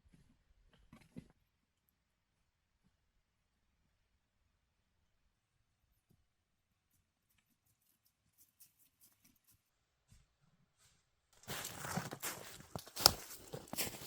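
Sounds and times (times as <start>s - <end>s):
crunching and rustling: 11.4s - 14.0s.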